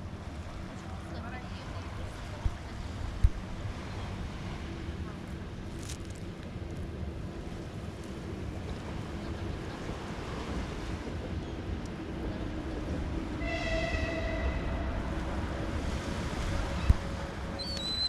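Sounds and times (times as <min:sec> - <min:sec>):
train rumbling past: 0:06.5 - 0:18.0
train horn: 0:13.4 - 0:15.4.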